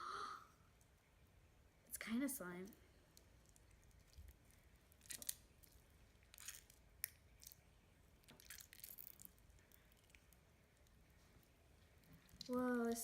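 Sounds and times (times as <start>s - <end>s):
slime squelching being kneaded: 3.1s - 13.0s.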